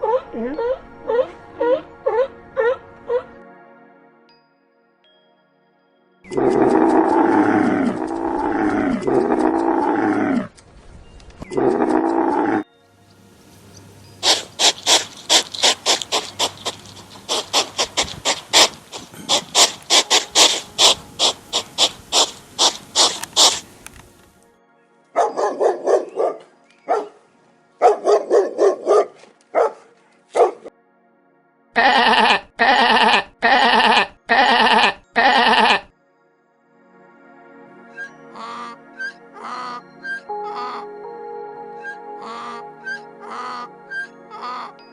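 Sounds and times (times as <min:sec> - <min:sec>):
long pitch-bending animal calls: 0:00.0 - 0:03.3, 0:06.3 - 0:10.4, 0:11.5 - 0:12.7, 0:14.2 - 0:23.8, 0:31.8 - 0:35.9, 0:37.9 - 0:44.9
short pitched animal calls: 0:14.2 - 0:23.7
rapid sharp clicks: 0:14.2 - 0:24.3.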